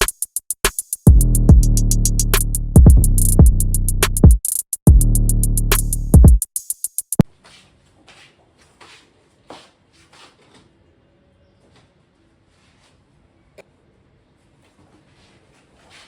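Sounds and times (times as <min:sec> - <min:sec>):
electronic music with synth bass: 0:01.1 - 0:04.3, 0:04.9 - 0:06.4.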